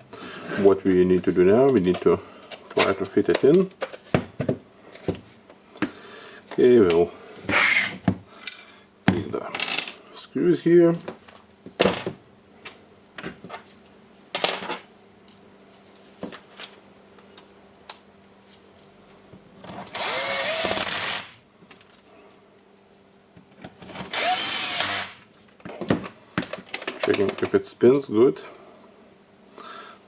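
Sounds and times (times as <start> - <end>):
cordless screwdriver motor whine: 19.9 - 21.3, 24.1 - 25.2.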